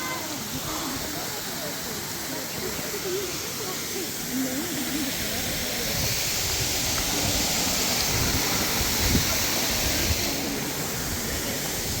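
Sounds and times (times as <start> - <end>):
waterfall rushing water: 0.0 - 12.0.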